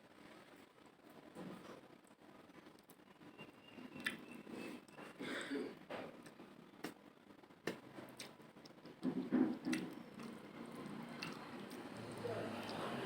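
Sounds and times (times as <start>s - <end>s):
wet chewing and lip-smacking: 3.9s - 5.0s, 7.6s - 12.9s.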